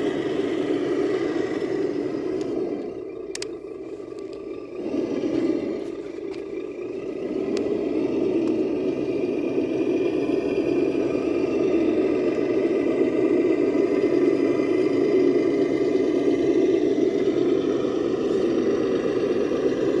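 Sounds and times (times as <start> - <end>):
toy truck motor whirring: 0.0 - 20.0.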